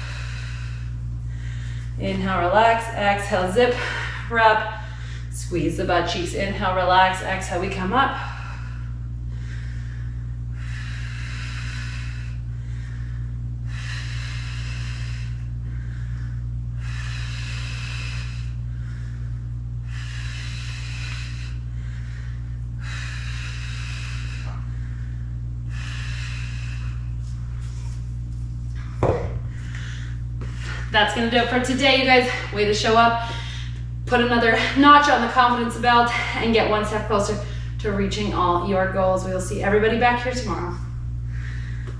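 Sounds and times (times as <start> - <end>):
woman breathing hard: 0.0 - 2.0, 3.5 - 5.4, 8.0 - 31.0, 32.0 - 34.8, 37.3 - 37.8, 41.0 - 41.9
steady low hum: 0.0 - 41.9.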